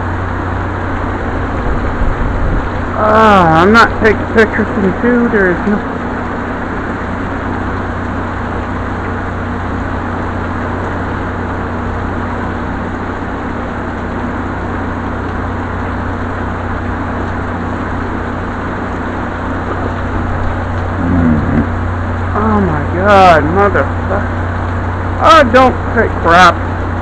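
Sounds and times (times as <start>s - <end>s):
constant low hum: 0.0s - 27.0s
rain falling: 0.0s - 27.0s.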